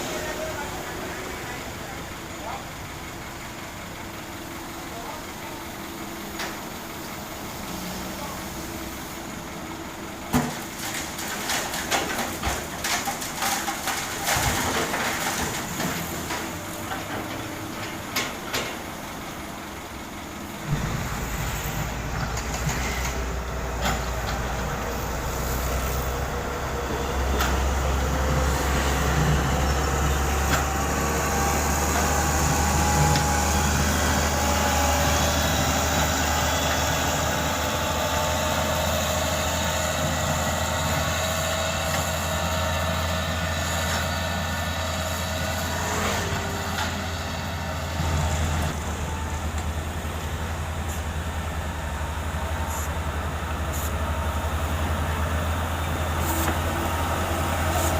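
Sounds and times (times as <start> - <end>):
deep diesel engine drone: 0.0 - 10.3, 15.6 - 57.9
machinery knocks and clatter: 10.3 - 18.9.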